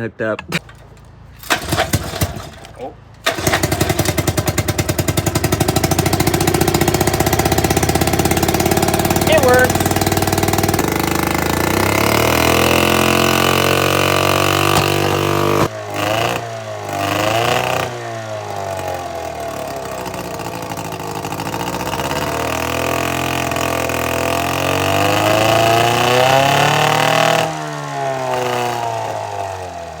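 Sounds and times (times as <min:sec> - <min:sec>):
outboard motor running: 0:03.2 - 0:30.0.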